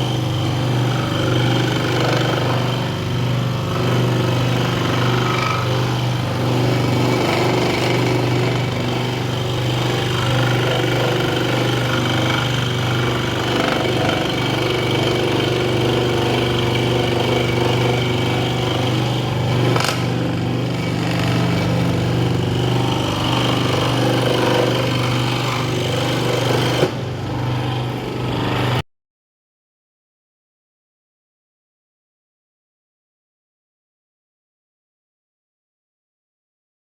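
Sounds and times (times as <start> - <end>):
scroll saw cutting wood: 0.0 - 28.8.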